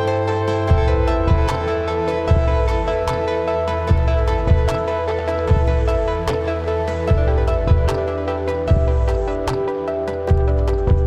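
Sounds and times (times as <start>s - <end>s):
deep bass: 0.0s - 11.0s
synth chords: 0.0s - 11.0s
drum hits: 3.9s - 4.8s.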